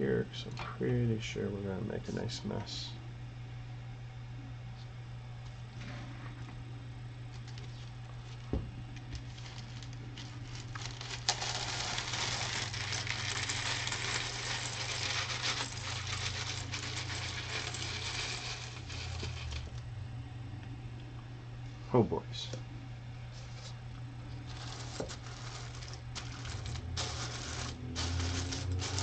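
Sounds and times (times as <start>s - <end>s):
low steady hum: 0.0s - 29.0s
plastic pieces clattering onto surface: 9.2s - 19.7s, 24.5s - 29.0s.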